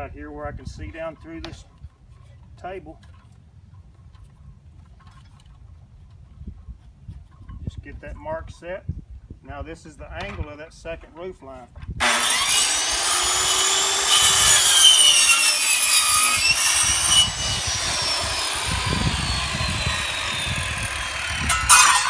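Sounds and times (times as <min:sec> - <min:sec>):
circular saw cutting: 0:12.0 - 0:22.0.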